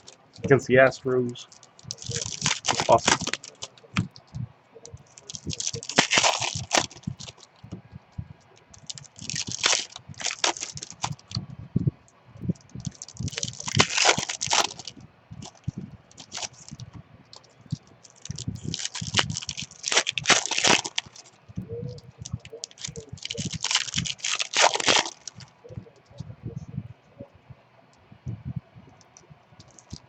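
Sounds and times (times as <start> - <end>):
card packs tearing and crinkling: 1.5 - 4.0, 5.1 - 7.5, 8.8 - 11.4, 12.8 - 15.6, 16.2 - 16.8, 18.0 - 21.3, 22.3 - 25.4.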